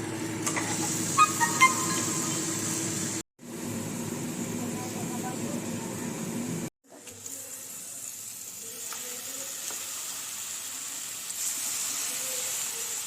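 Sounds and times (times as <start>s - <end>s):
meat sizzling in hot oil: 6.3s - 13.0s.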